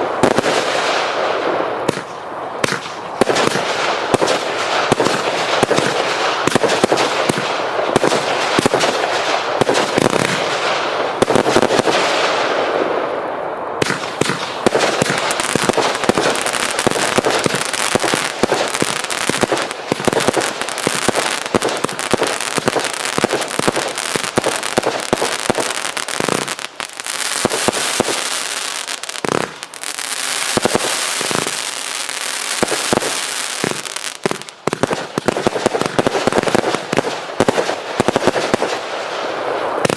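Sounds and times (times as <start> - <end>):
firework crackling: 0.0 - 39.9
firework rocket launches and bursts: 13.8 - 39.9.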